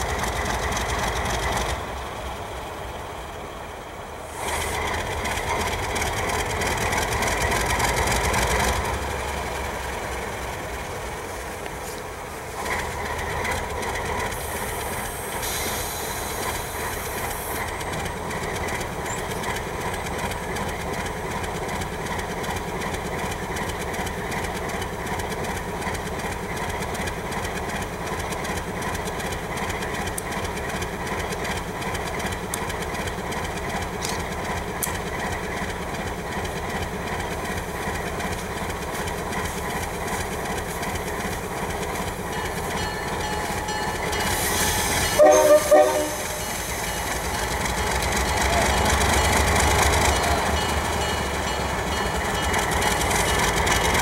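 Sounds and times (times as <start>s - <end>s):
diesel locomotive engine: 0.0s - 54.0s
wheels on rail: 0.0s - 54.0s.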